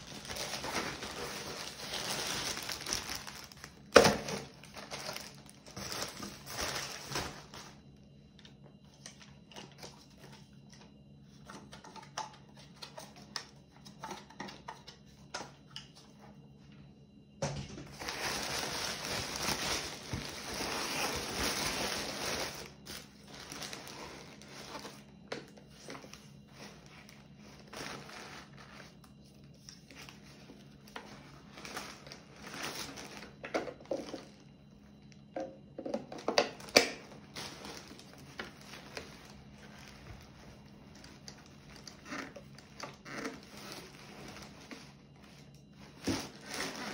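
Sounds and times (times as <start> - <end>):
plastic and paper rustling: 0.0 - 7.8, 17.8 - 34.5, 36.5 - 46.9.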